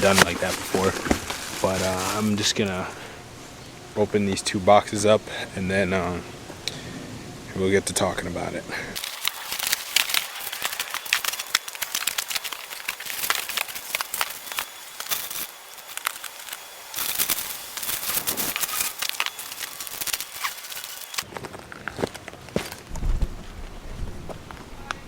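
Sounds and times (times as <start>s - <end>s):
cardboard and tape crackling: 0.0s - 3.1s, 9.0s - 23.4s
packing material crinkling: 0.0s - 3.1s, 9.0s - 22.9s.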